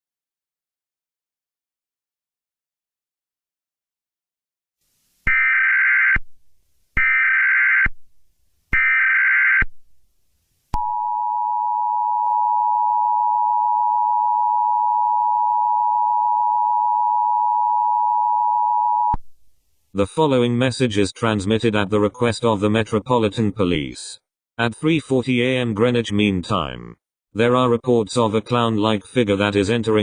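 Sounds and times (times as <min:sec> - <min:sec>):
steady attention tone: 0:10.8 - 0:19.2.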